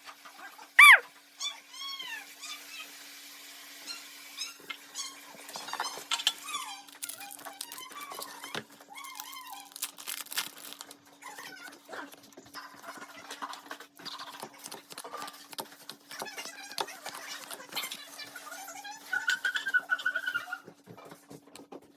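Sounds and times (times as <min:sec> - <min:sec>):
faint high squeaks: 0:00.8 - 0:01.1
foil wrappers crinkling: 0:06.2 - 0:18.2.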